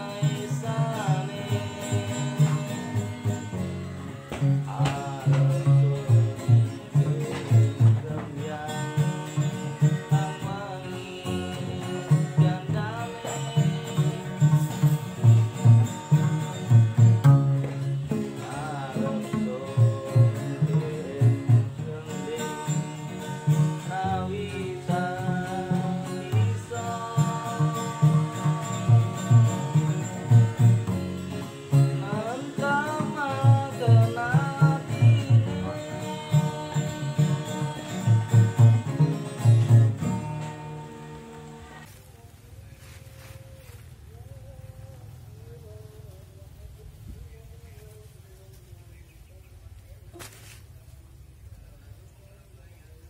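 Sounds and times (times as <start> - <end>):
plucked string melody: 0.0 - 42.0
person singing: 0.0 - 48.8.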